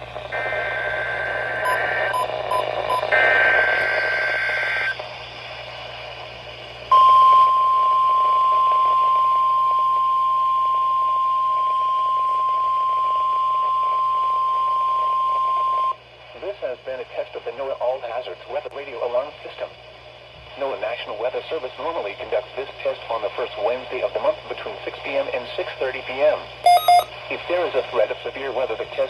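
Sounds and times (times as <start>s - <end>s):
radio hiss: 0.0s - 6.9s, 14.8s - 29.0s
steady warning alarm tone: 0.3s - 5.0s, 6.9s - 16.0s, 26.7s - 27.1s
screechy data bursts: 0.4s - 5.0s
short beeps: 6.9s - 11.1s, 26.7s - 27.1s.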